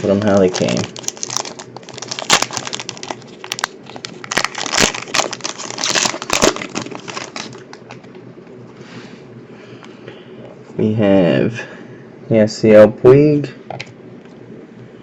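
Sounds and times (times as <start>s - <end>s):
wrapper crinkling and tearing: 0.0s - 8.1s.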